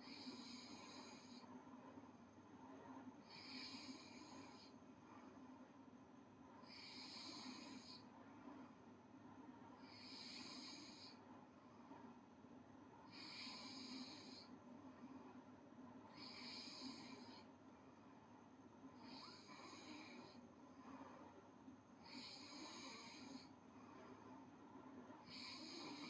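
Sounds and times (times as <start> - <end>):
girl snoring faintly: 19.0 - 20.4, 22.0 - 23.6, 25.2 - 26.0.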